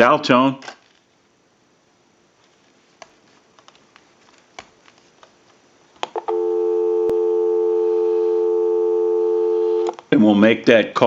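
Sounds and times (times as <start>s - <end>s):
telephone dial tone: 6.2s - 10.0s.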